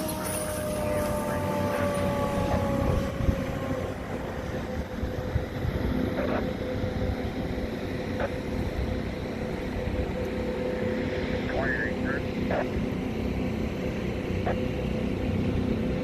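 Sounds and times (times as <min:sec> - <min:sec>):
low engine rumble: 0:00.0 - 0:16.0.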